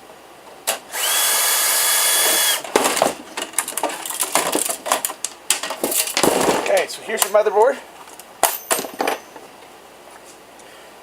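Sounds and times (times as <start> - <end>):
high whirring hiss: 0.7 - 2.7.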